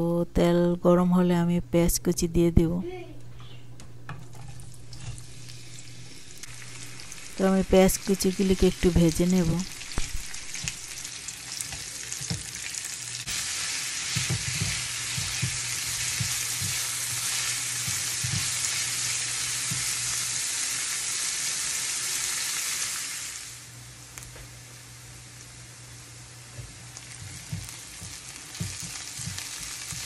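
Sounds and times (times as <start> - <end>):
onions sizzling in oil: 4.6 - 30.0.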